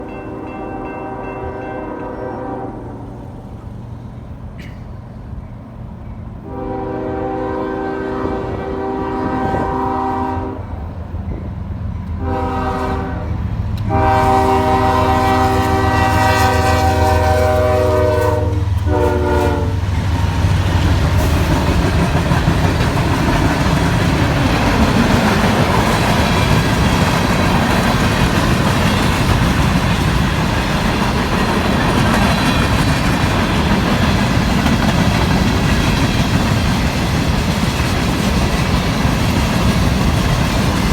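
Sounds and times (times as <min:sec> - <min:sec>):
locomotive horn blasts: 0:00.0 - 0:03.3, 0:06.4 - 0:10.9, 0:12.2 - 0:20.0
train wheels clattering on rail: 0:04.4 - 0:06.3, 0:10.8 - 0:40.9.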